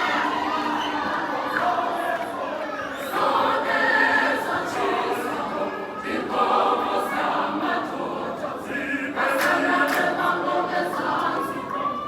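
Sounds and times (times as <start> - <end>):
choir singing: 3.0 - 12.0.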